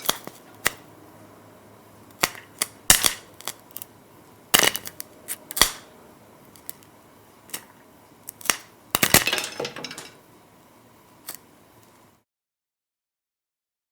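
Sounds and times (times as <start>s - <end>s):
popcorn kernels popping: 0.0s - 0.9s, 2.0s - 5.9s, 6.5s - 10.2s.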